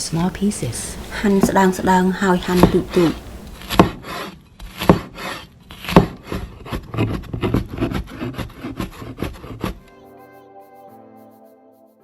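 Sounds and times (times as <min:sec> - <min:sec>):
knife chopping on cutting board: 0:01.4 - 0:01.7, 0:02.5 - 0:09.8.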